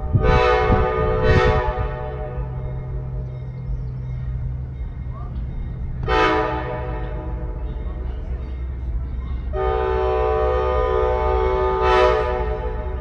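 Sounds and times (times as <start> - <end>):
locomotive air horn blasts: 0.0 - 3.1, 6.0 - 7.7, 9.5 - 13.0
train rumbling: 0.0 - 13.0.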